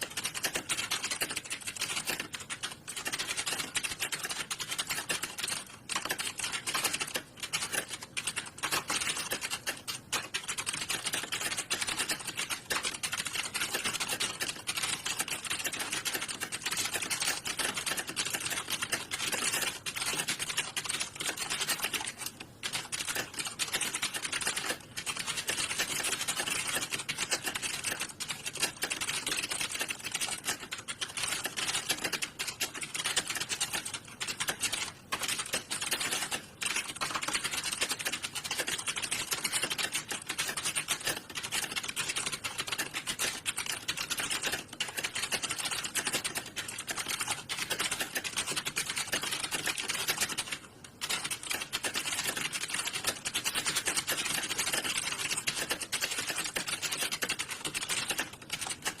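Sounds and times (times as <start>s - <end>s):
keyboards clattering: 0.0s - 59.0s.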